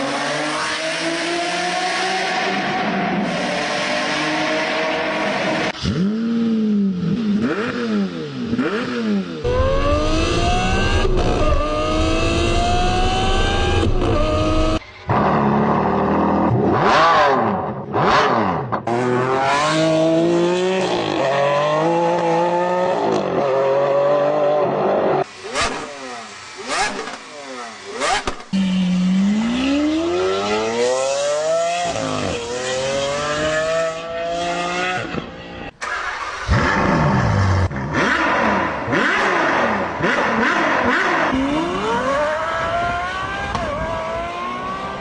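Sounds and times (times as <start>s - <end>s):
supercar engine revving: 3.2s - 24.8s, 35.8s - 45.0s.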